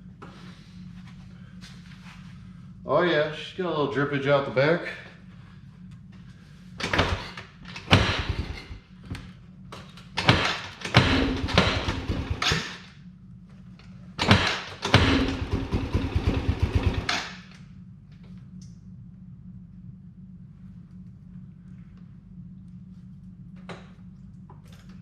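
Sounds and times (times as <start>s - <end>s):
engine chugging and sputtering: 5.1s - 18.8s
starter cranking engine: 10.2s - 12.8s, 14.2s - 17.4s.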